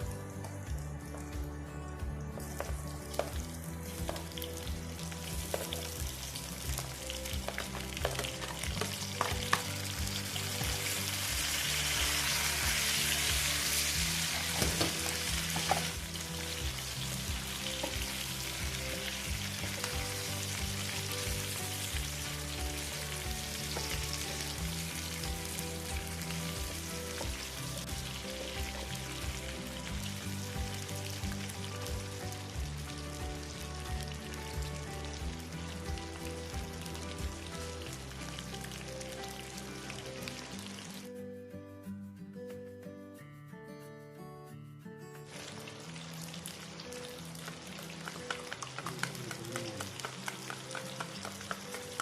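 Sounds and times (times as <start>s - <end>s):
soft background music: 0.0s - 52.0s
food sizzling in a pan: 2.4s - 41.2s, 45.3s - 52.0s
utensil clicking against pan: 47.4s - 52.0s.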